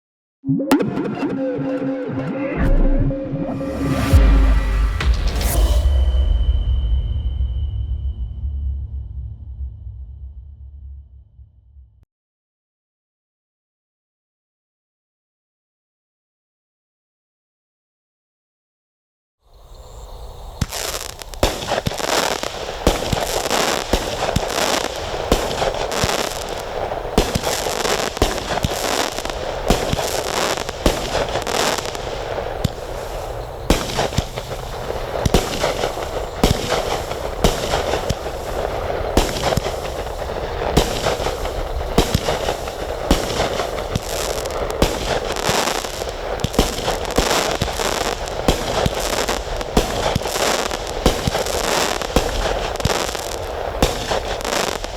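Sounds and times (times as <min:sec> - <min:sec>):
rapid fireworks barrage: 0:20.6 - 0:54.9.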